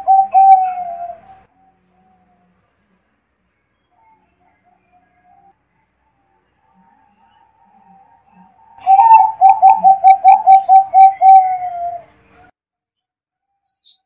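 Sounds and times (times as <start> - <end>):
dove cooing: 0.0 - 1.8, 7.2 - 12.2.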